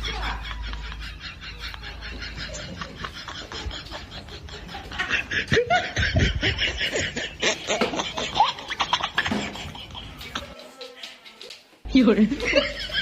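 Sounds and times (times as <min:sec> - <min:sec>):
person snickering: 0:00.1 - 0:11.0.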